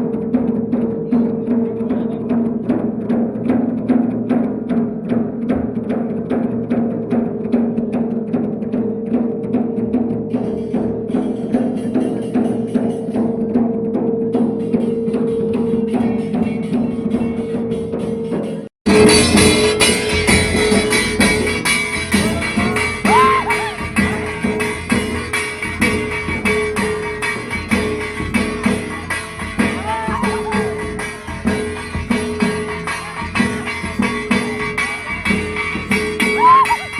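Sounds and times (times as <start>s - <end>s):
dhol drums beating: 0.0s - 36.9s.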